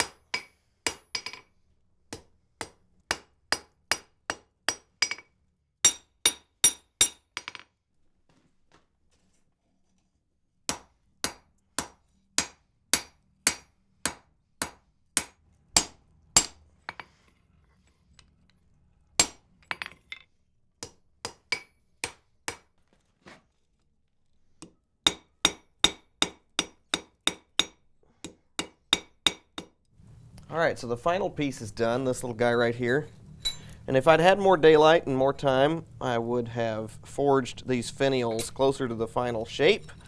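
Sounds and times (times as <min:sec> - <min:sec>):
hammer striking iron on anvil: 0:00.0 - 0:01.4, 0:02.1 - 0:07.4, 0:10.7 - 0:16.6, 0:19.2 - 0:19.4, 0:25.1 - 0:29.7, 0:33.4 - 0:33.8, 0:37.8 - 0:40.0.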